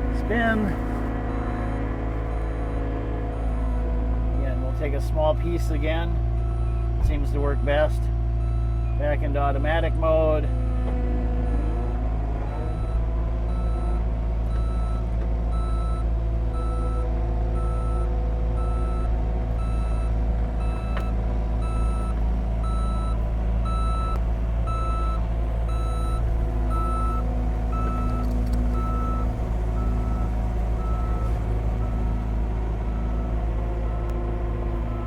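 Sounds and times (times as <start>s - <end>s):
backup alarm beeping: 0.0s - 3.8s, 17.6s - 35.0s
diesel engine running: 0.0s - 35.0s.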